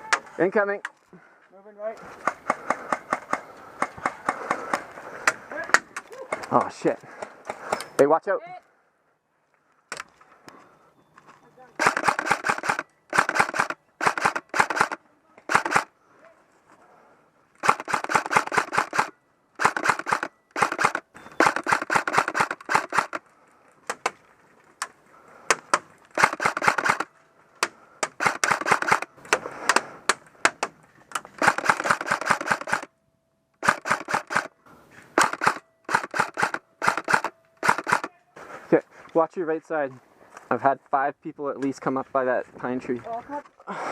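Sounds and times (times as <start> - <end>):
airsoft rifle firing bursts: 11.8 - 15.9, 17.6 - 23.2, 26.2 - 27.1, 28.1 - 29.1, 31.4 - 32.9, 33.6 - 34.5, 35.2 - 38.1.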